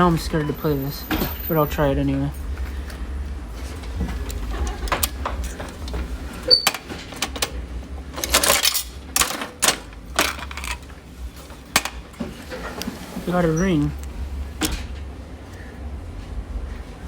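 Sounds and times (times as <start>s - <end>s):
steady low hum: 0.0s - 17.0s
coins dropping into machine: 8.2s - 10.9s.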